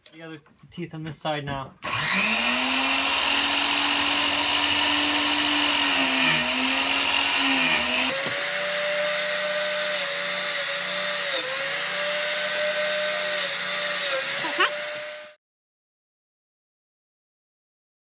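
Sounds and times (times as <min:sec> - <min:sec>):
grinding wheel motor hum: 0:01.9 - 0:08.6.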